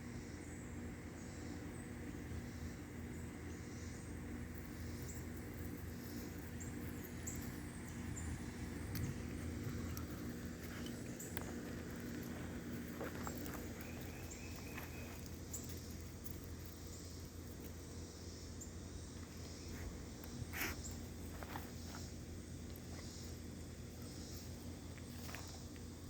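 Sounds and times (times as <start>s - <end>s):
low steady hum: 0.0s - 26.0s
small animal chewing vegetables: 5.2s - 17.9s, 19.2s - 26.0s.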